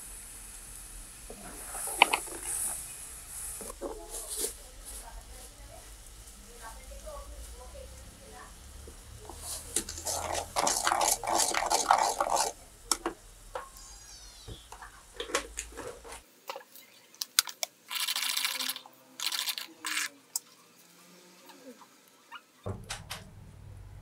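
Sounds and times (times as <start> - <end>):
utensils and dishes clicking: 9.7 - 13.8.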